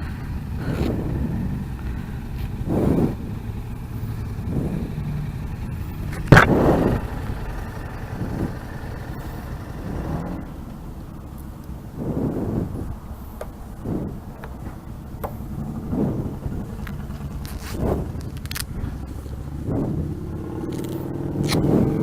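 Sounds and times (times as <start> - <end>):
sudden loud burst: 0.0 - 10.7
motorcycle engine running: 0.0 - 22.0.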